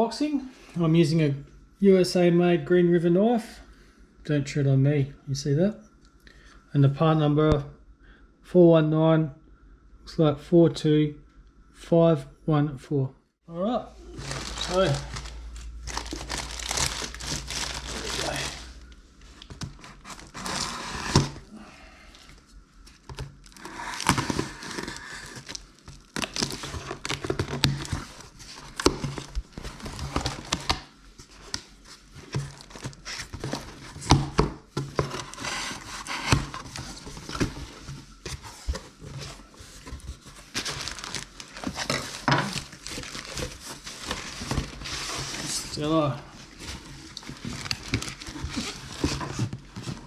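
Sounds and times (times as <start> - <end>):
packaging rustling and tearing: 14.0 - 21.5, 22.9 - 45.8, 46.4 - 50.0.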